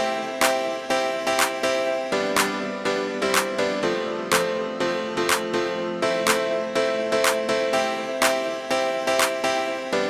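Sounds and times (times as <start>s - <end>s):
steady light beat: 2.3s - 8.6s.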